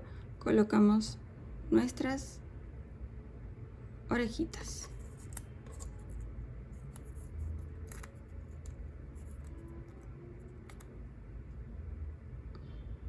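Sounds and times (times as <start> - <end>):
low room hum: 0.0 - 13.0
paper clicks and rustles: 6.8 - 10.9.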